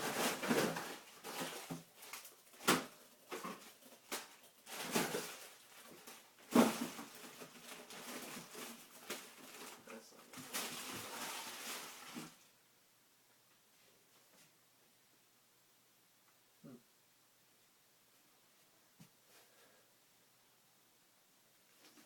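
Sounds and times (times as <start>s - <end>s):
frozen packages rustling and knocking: 0.0s - 12.5s.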